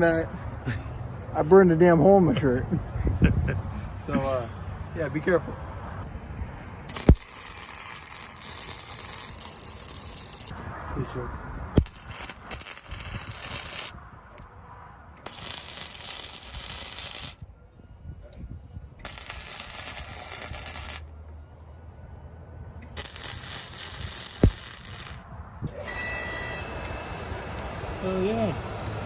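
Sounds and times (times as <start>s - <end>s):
welding: 6.9s - 10.5s, 11.8s - 14.5s, 15.2s - 17.5s, 19.0s - 21.1s, 22.8s - 29.0s.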